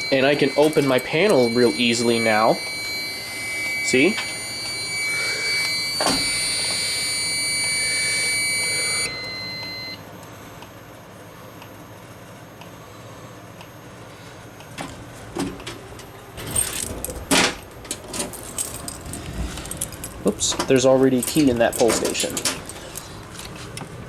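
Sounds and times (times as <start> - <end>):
fire alarm buzzers: 0.0 - 10.5
keys jangling: 16.4 - 23.6.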